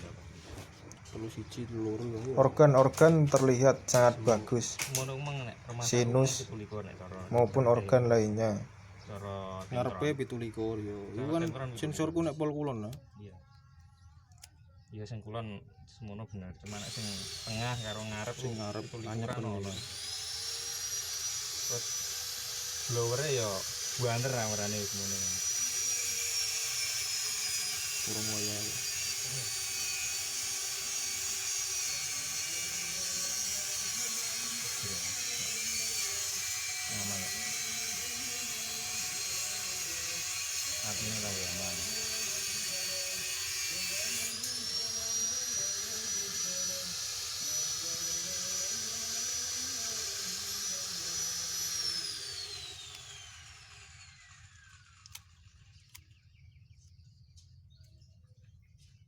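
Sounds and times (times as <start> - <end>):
ventilation blowers whirring: 0.0 - 11.8
sharp clicks: 2.8 - 5.4, 55.0 - 56.1
machine motor whining: 16.7 - 56.0.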